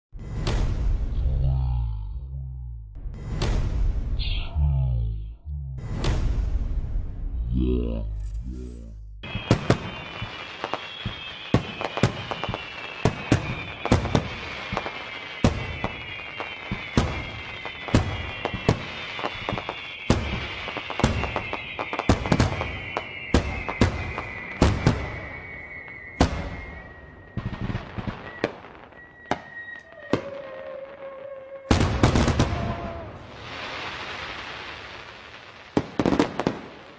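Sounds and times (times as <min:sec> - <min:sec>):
fireworks banging: 0:08.6 - 0:30.6, 0:31.7 - 0:36.9
high fireworks crackle: 0:08.6 - 0:36.9.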